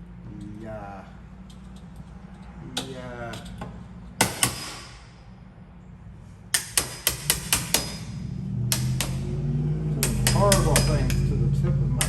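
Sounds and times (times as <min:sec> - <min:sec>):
hammer striking wood chisel: 0:04.2 - 0:05.1, 0:06.5 - 0:09.3, 0:10.0 - 0:11.3.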